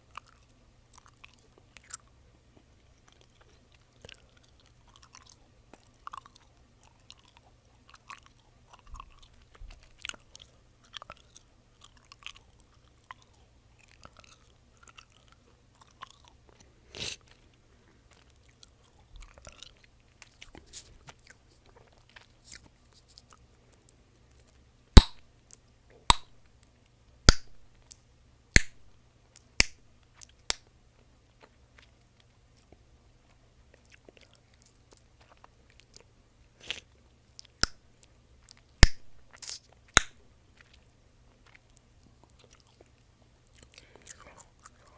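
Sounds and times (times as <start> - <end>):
gum chewing: 0.0 - 25.2, 31.3 - 44.9
loud gum pops: 25.0 - 25.2, 26.1 - 26.4, 27.3 - 27.6, 28.5 - 28.9, 29.6 - 29.8, 37.6 - 37.8, 38.8 - 39.2, 39.9 - 40.2
wet mouth clicks: 27.3 - 27.6, 36.6 - 37.8, 38.8 - 40.2.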